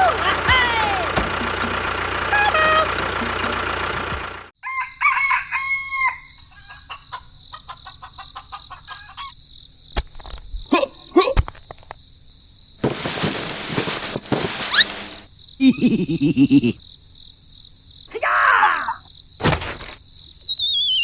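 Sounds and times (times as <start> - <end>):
rooster crowing: 4.6 - 6.8.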